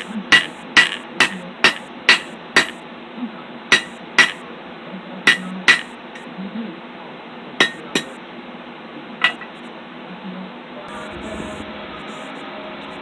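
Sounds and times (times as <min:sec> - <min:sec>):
hammer ringing on anvil: 0:00.0 - 0:02.8, 0:03.7 - 0:04.4, 0:05.3 - 0:05.9, 0:07.6 - 0:08.2.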